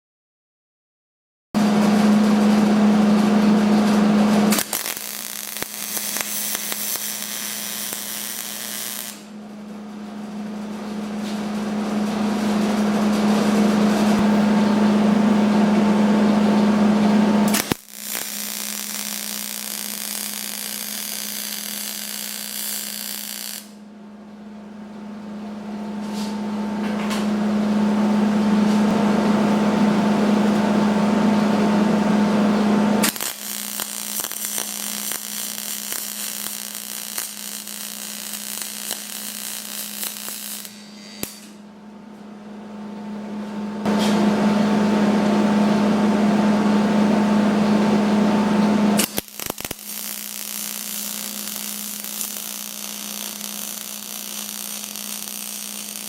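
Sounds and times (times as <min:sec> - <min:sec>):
welding arc buzz and hiss: 0:01.6 - 0:09.3, 0:16.8 - 0:23.8, 0:32.9 - 0:41.6, 0:48.6 - 0:56.0
steady machine noise: 0:01.6 - 0:23.9, 0:27.4 - 0:41.9, 0:43.8 - 0:56.0.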